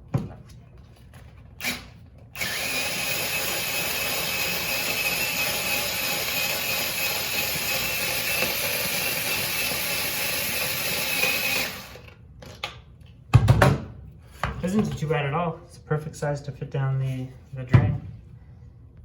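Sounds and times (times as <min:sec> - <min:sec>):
cordless screwdriver motor whining: 0:01.6 - 0:12.1.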